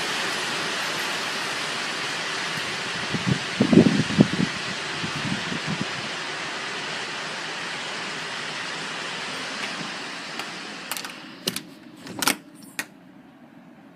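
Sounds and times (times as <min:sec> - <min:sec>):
low rumbling gusts: 0:00.0 - 0:10.9
strong storm wind: 0:00.0 - 0:10.9.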